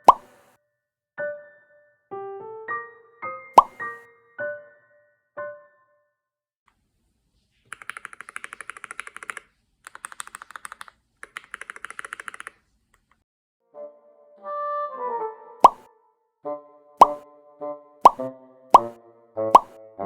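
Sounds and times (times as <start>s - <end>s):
mechanical keyboard typing: 7.7s - 12.6s.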